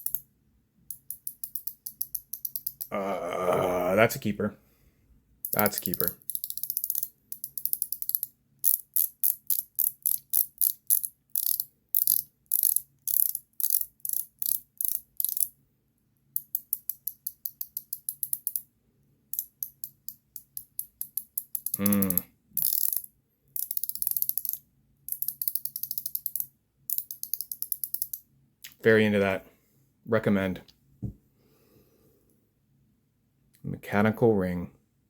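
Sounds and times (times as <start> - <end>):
ratchet ring clicking: 0.0 - 0.2, 0.9 - 2.9, 5.4 - 15.5, 16.4 - 18.7, 19.3 - 28.2.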